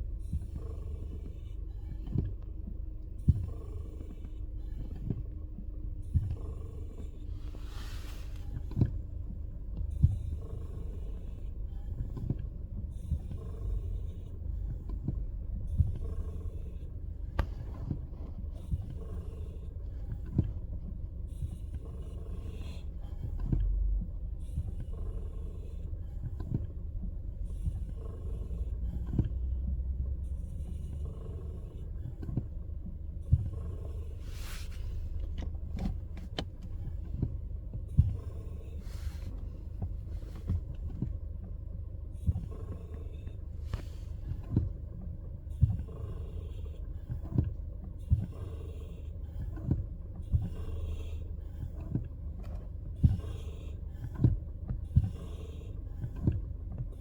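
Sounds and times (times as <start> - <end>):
steady low rumble: 0.0 - 57.0
brake pedal hissing: 33.7 - 37.3, 38.0 - 40.8.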